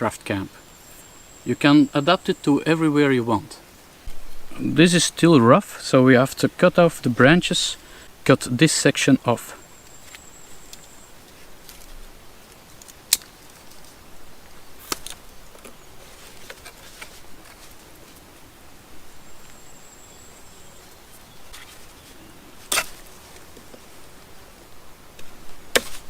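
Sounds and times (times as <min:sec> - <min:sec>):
twigs cracking off: 0:09.8 - 0:14.0, 0:14.8 - 0:18.2, 0:25.1 - 0:26.0.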